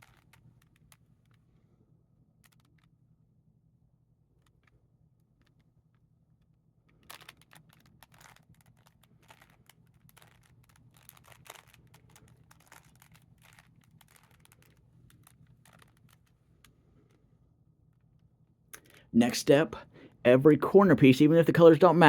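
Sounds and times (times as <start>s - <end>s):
plastic puzzle cube clicking: 0.0s - 1.4s, 2.4s - 2.9s, 7.0s - 16.7s.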